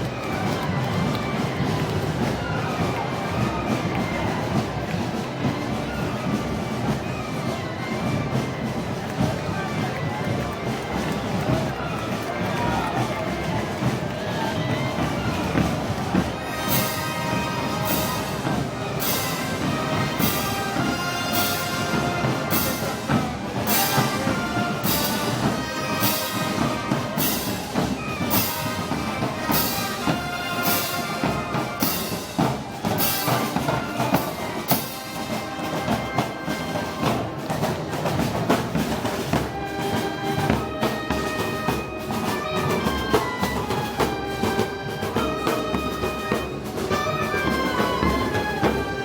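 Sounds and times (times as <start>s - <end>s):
brass band playing: 0.0s - 49.0s
drum and cymbal strikes: 15.5s - 49.0s.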